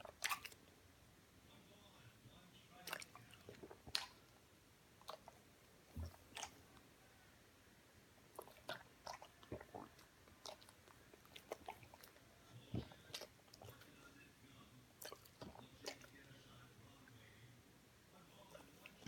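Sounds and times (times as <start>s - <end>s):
faint irregular clicks and smacks: 2.3s - 6.9s, 8.2s - 17.3s.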